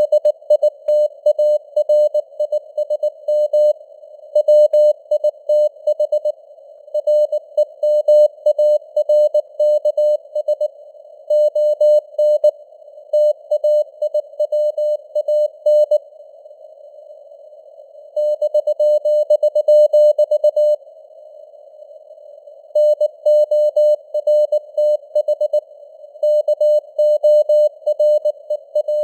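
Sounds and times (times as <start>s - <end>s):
morse code beeps: 26.3s - 29.0s.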